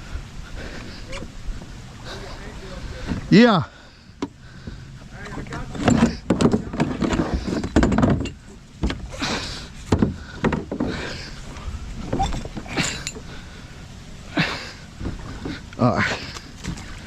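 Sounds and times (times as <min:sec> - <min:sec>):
hollow knocks against kayak hull: 0:09.9 - 0:11.0.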